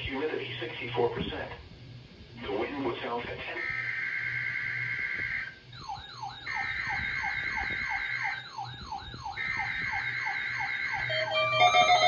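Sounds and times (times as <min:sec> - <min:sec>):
alert radio whooping alarm: 0:03.6 - 0:12.0
two-tone data screech: 0:11.0 - 0:12.0.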